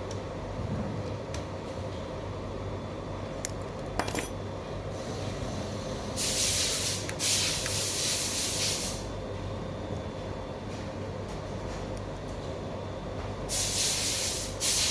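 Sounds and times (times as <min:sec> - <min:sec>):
steady low hum: 0:00.0 - 0:14.9
small metal tools clinking: 0:04.0 - 0:04.4
hiss of air spray: 0:05.0 - 0:09.1, 0:13.5 - 0:14.9.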